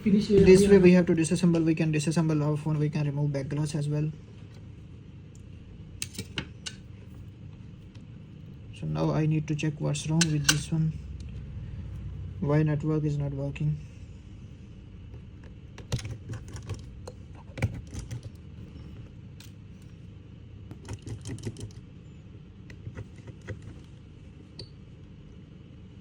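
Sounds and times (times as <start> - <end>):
steady low hum: 0.0 - 26.0
hand tools clicking on phone parts: 15.7 - 18.5, 20.7 - 21.8, 22.7 - 23.9.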